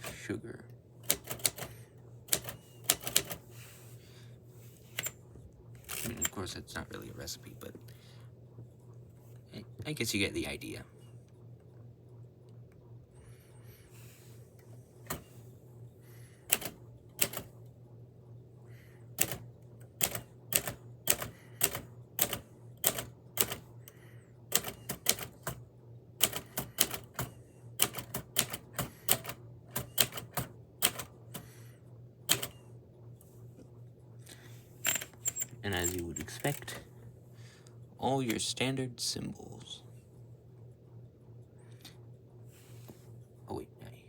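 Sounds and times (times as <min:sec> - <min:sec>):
manual typewriter key strikes: 0:01.0 - 0:01.7, 0:02.3 - 0:03.4, 0:20.0 - 0:23.6.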